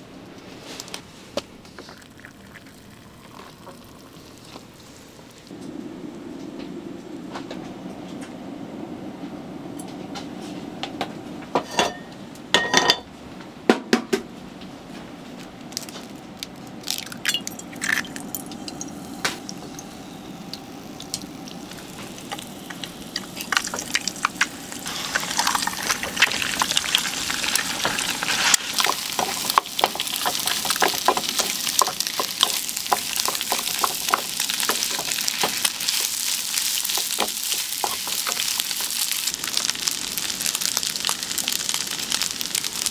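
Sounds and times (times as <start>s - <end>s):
rice sizzling in a hot pan: 16.8s - 42.9s.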